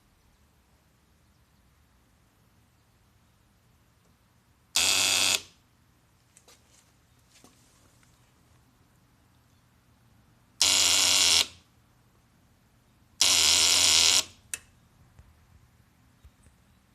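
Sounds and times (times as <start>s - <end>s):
electric starter buzzing: 4.8s - 5.5s, 10.6s - 11.6s, 13.2s - 14.4s.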